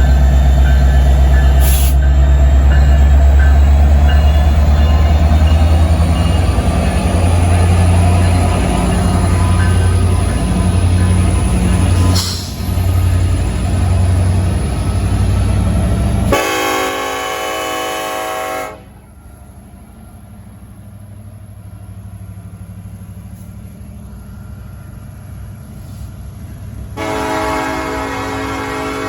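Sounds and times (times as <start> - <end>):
loud locomotive rumble: 0.0 - 29.0
locomotive air horn: 16.3 - 19.0, 27.0 - 29.0.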